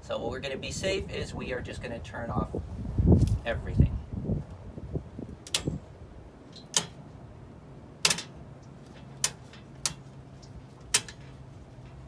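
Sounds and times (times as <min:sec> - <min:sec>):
circuit breakers clicking off: 0:05.4 - 0:05.8, 0:06.6 - 0:07.0, 0:08.0 - 0:08.4, 0:10.8 - 0:11.2.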